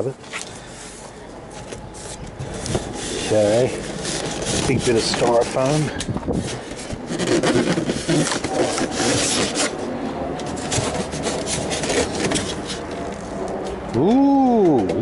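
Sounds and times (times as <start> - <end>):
styrofoam scraping cardboard box: 2.0 - 12.9
styrofoam squeaks: 7.0 - 9.8.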